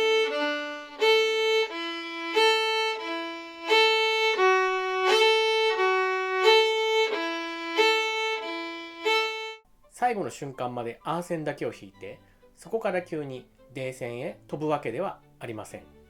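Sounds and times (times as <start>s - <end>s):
solo violin bowing: 0.0s - 9.6s.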